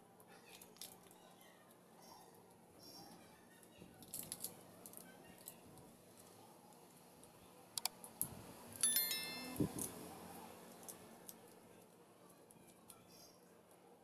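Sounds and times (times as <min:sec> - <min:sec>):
metal part clinking: 0:08.8 - 0:09.9.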